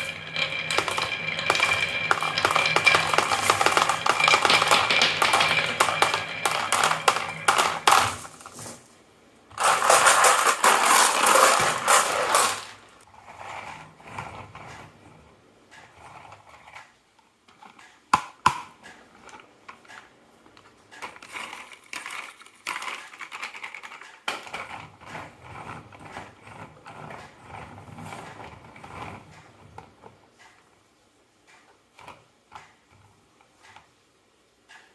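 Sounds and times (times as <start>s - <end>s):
marbles rattling down wooden track: 0.0s - 8.8s, 9.6s - 13.0s, 21.0s - 26.3s.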